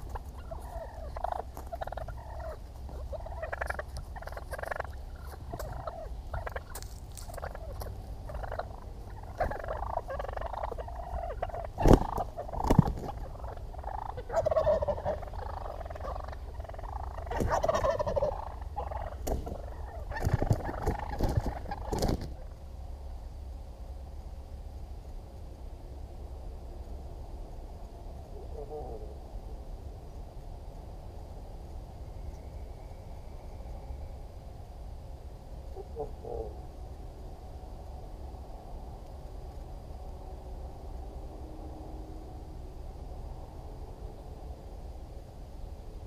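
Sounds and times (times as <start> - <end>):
turkeys gobbling: 0.0 - 22.6, 35.7 - 36.6.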